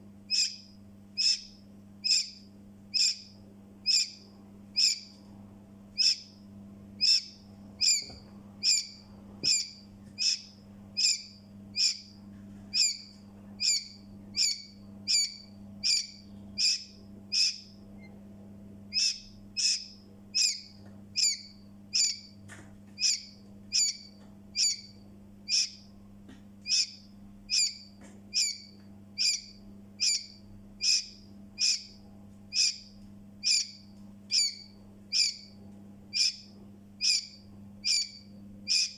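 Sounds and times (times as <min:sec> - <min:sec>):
faint low hum: 0:00.0 - 0:38.9
chick peeping: 0:06.0 - 0:06.4, 0:07.0 - 0:18.1, 0:18.9 - 0:22.4, 0:23.0 - 0:25.9, 0:26.6 - 0:38.9.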